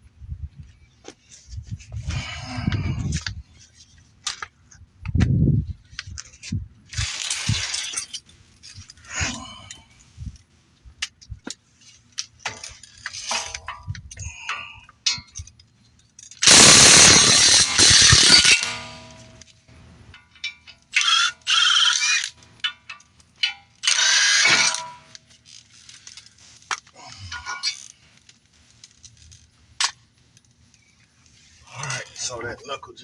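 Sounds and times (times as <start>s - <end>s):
metal tools clinking and knocking: 5.9s - 9.9s, 11.8s - 19.5s, 20.1s - 28.0s
loud burst of noise: 16.4s - 19.2s.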